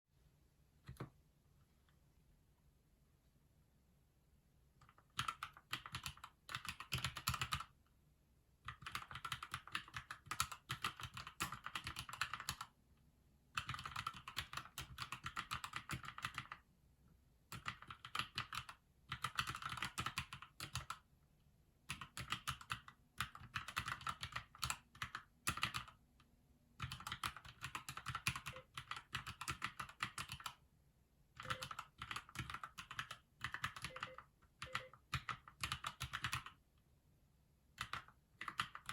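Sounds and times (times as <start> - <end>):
mechanical keyboard typing: 0.8 - 1.1, 4.8 - 7.7, 8.6 - 12.7, 13.6 - 16.6, 17.5 - 21.1, 21.9 - 26.0, 26.8 - 30.6, 31.4 - 36.6, 37.7 - 38.9.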